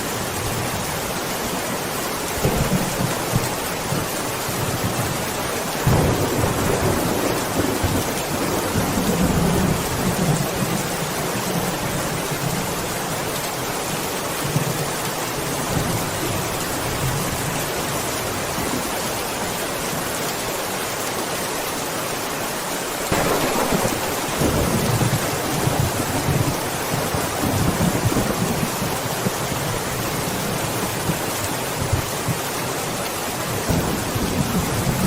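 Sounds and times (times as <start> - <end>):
steady rain falling: 0.0 - 35.0
thunder clap and rumble: 23.1 - 30.0.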